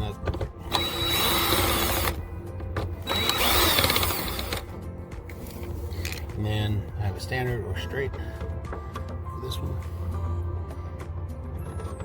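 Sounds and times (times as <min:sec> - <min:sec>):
background music: 0:00.0 - 0:12.0
power drill running: 0:00.7 - 0:02.2, 0:03.0 - 0:04.6.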